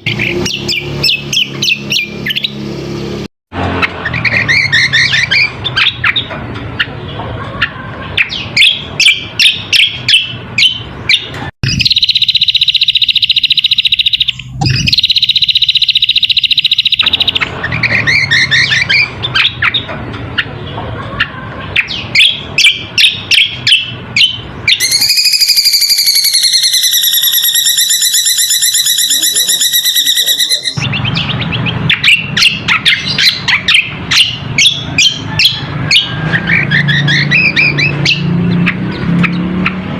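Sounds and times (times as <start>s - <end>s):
bird chirping and twittering: 0.0s - 3.1s, 3.8s - 39.9s
buzzy bird trills: 7.7s - 20.5s, 21.8s - 39.4s.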